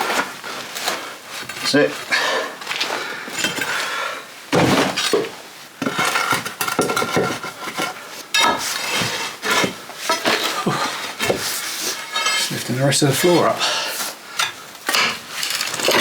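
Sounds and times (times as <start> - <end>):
metal tools scraping on stone: 5.0 - 10.6, 11.6 - 13.6, 14.4 - 16.0.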